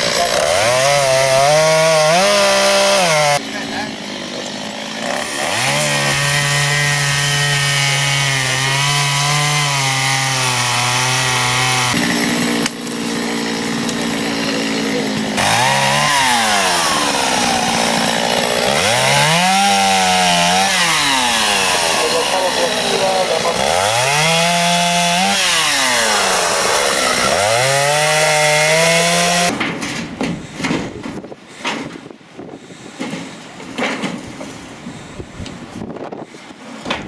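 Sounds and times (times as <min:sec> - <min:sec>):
chainsaw cutting and revving: 0:00.0 - 0:29.6.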